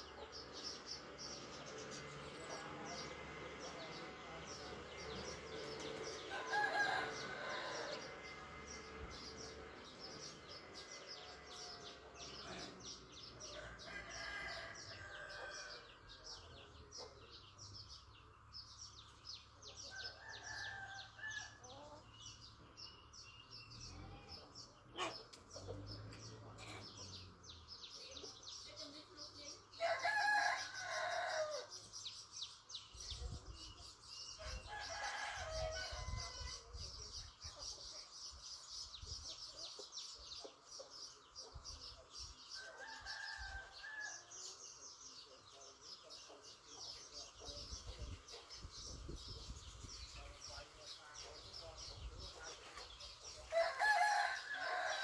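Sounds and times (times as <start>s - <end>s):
roosters crowing: 0.0s - 17.7s, 19.7s - 22.9s, 29.7s - 32.3s, 34.2s - 37.2s, 42.4s - 45.2s, 48.5s - 55.0s
chickens clucking: 24.2s - 27.3s, 39.1s - 42.8s.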